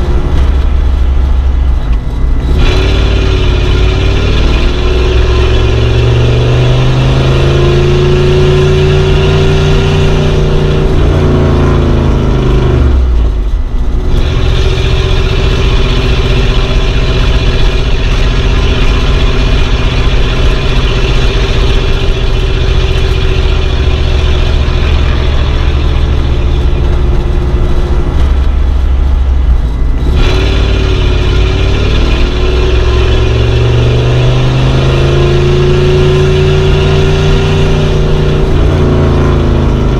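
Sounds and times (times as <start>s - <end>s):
car engine running: 0.0s - 39.9s.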